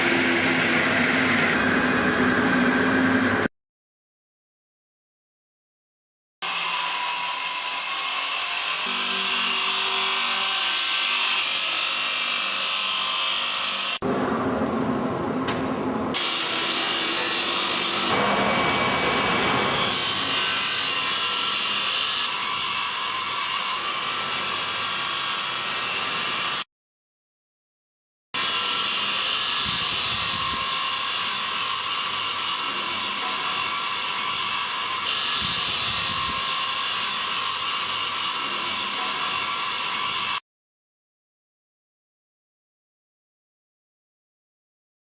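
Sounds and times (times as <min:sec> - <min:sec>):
wood profiling machine whining: 0:00.0 - 0:03.5, 0:16.2 - 0:22.8.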